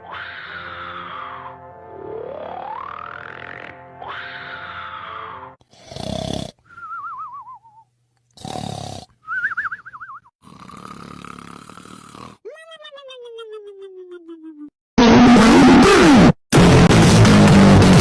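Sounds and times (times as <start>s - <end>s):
cartoon snoring with whistle: 5.7s - 7.8s, 8.4s - 12.4s.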